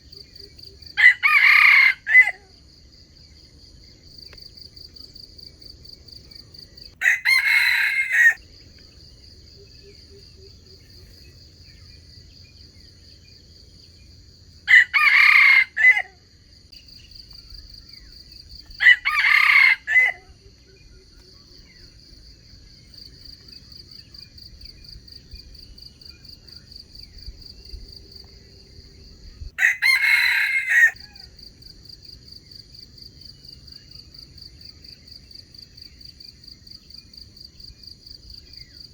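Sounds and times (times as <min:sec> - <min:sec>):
insects droning: 0:00.0 - 0:38.9
rooster crowing: 0:01.0 - 0:02.5, 0:07.0 - 0:08.4, 0:14.6 - 0:16.2, 0:18.8 - 0:20.4, 0:29.5 - 0:31.4.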